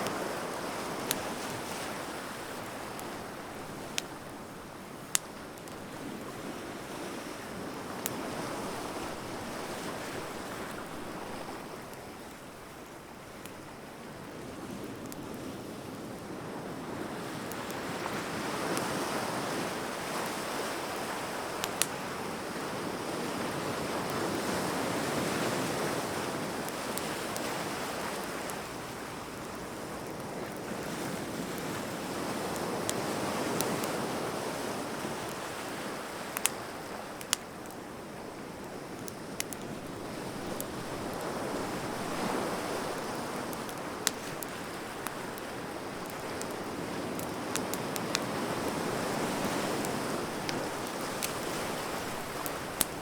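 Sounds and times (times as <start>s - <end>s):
bonfire popping and crackling: 0.0s - 6.9s, 17.3s - 22.6s, 23.8s - 53.0s
surf washing on a beach: 0.0s - 53.0s.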